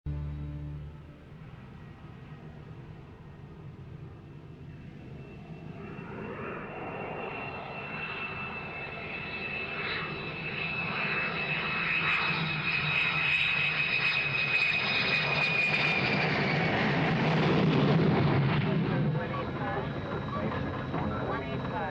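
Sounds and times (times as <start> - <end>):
jet engine whine: 0.1 - 21.9.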